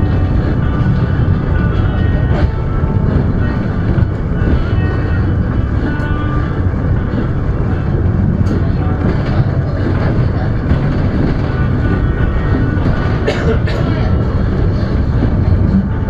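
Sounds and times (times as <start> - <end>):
wheels rumbling on track: 0.0 - 16.0.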